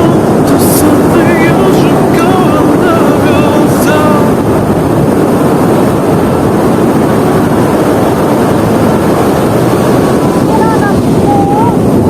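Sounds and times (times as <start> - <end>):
wind blowing over microphone: 0.0 - 12.0.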